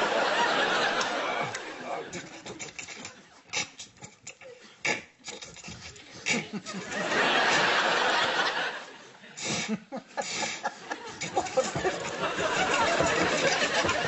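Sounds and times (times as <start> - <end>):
audience laughing: 0.0 - 2.9, 6.2 - 14.0.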